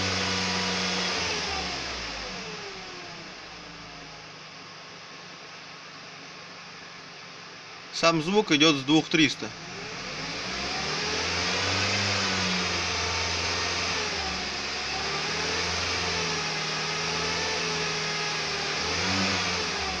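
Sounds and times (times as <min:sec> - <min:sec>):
car engine at raised revs: 0:00.0 - 0:05.2, 0:08.2 - 0:20.0.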